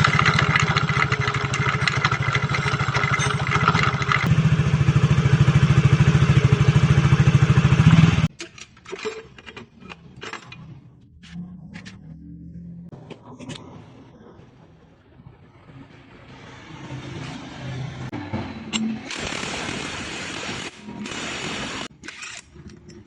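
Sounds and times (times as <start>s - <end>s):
scattered clicks and knocks: 0.0s - 4.3s
scooter running with harsh noise: 0.0s - 8.3s, 16.2s - 21.9s.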